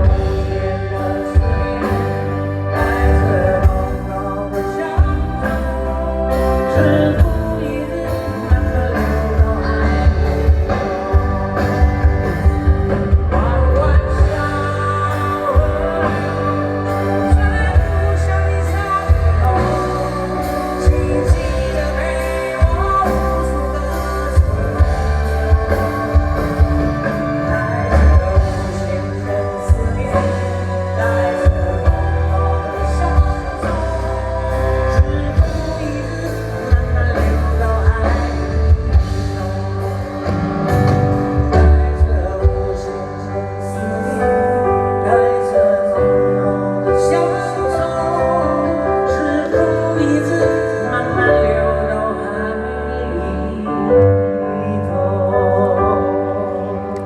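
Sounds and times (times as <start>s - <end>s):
live band music over speakers: 0.0s - 57.0s
person singing: 0.0s - 57.0s.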